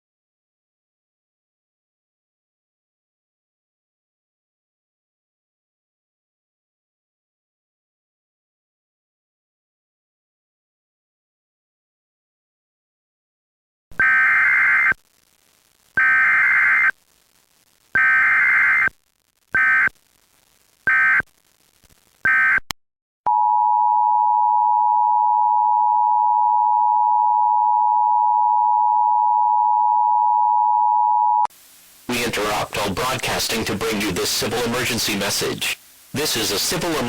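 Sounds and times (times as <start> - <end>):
screeching digital data bursts: 14.0 - 15.0, 16.0 - 16.9, 18.0 - 18.9, 20.9 - 21.3.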